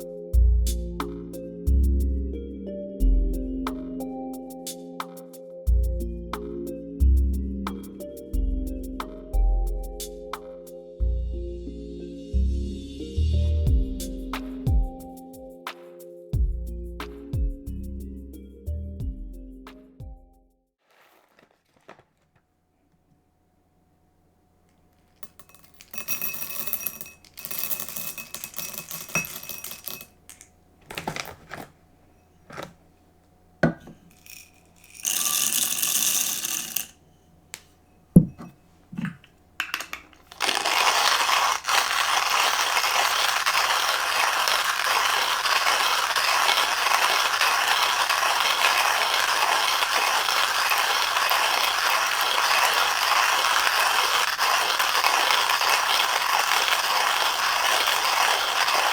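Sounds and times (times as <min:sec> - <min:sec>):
kitchen things rattling and clinking: 0:25.2 - 0:31.8.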